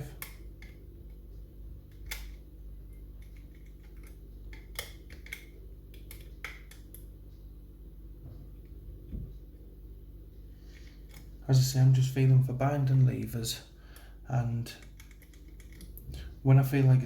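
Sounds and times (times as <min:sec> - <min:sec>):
metallic clicks of lock picking: 0:14.8 - 0:16.0.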